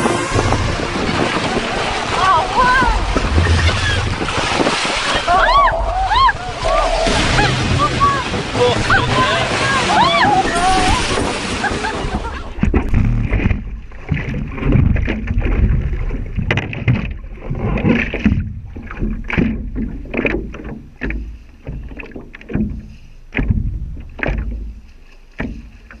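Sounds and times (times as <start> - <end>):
water splashing around a boat: 0.0 - 26.0.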